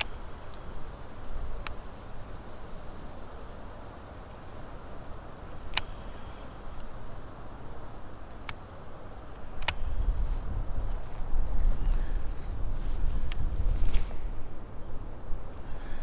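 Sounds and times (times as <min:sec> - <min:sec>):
wind buffeting microphone: 0:09.2 - 0:16.0
sharp clicks: 0:09.6 - 0:09.8.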